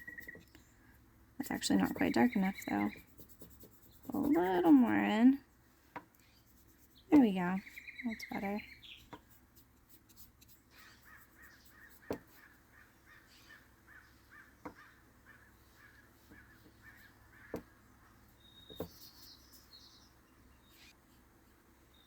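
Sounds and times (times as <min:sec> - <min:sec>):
high bird chirp: 0:07.6 - 0:09.1, 0:18.4 - 0:20.8.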